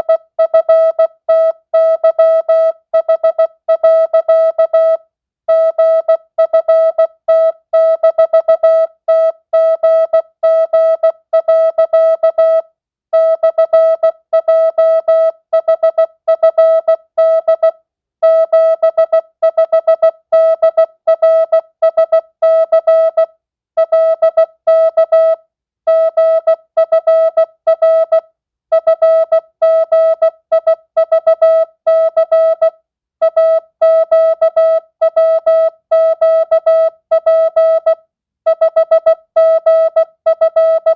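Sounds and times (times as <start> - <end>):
morse code beeps: 33.3 - 40.9.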